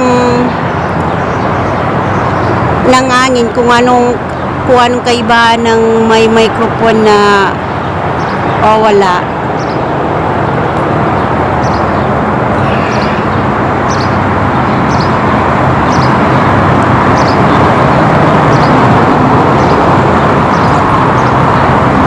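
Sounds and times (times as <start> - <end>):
wind on microphone: 0.0 - 22.0
faint high chirps: 12.6 - 14.2.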